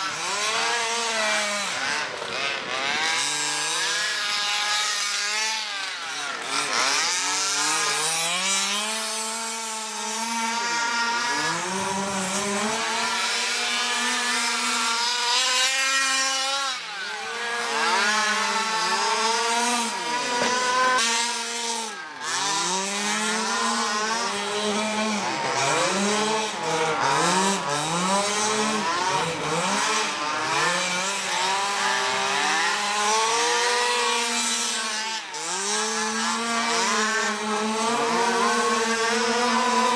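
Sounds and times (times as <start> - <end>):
small two-stroke engines revving: 0.0 - 39.9.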